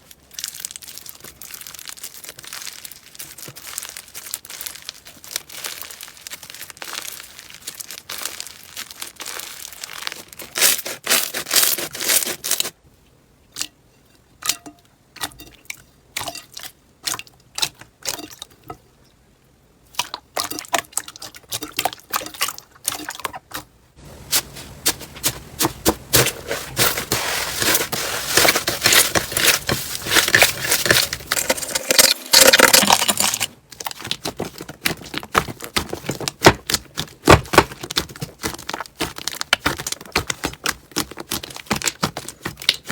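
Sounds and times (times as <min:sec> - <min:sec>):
slime squished by hand: 0:28.3 - 0:42.9.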